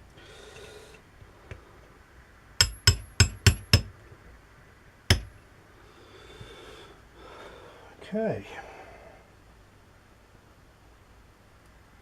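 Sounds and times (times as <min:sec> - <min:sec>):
small hammer tapping on metal: 0:02.6 - 0:03.9, 0:05.1 - 0:05.4.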